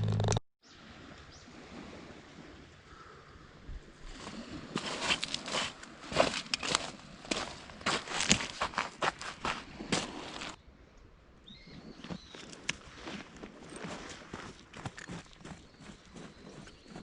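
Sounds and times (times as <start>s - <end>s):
footsteps crunching on ground: 4.1s - 10.6s, 12.0s - 17.0s.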